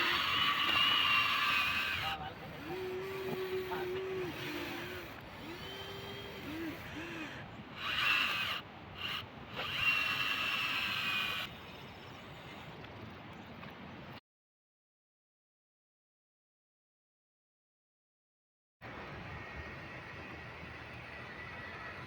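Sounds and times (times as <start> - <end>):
small electric gear motors whining: 0.0 - 13.2, 19.3 - 22.0.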